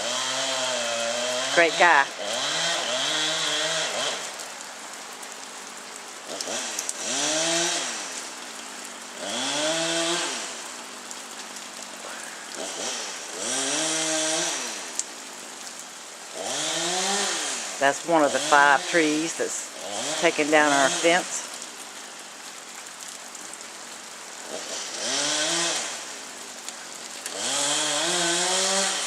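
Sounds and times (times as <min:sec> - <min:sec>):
chainsaw revving: 0:00.0 - 0:04.4, 0:06.3 - 0:08.2, 0:09.2 - 0:10.6, 0:12.5 - 0:14.9, 0:16.3 - 0:21.5, 0:24.4 - 0:26.1, 0:27.3 - 0:29.0.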